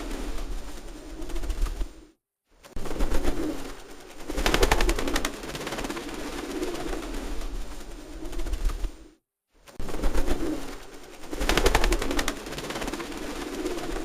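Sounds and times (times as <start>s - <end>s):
pigeons cooing: 4.4s - 8.5s.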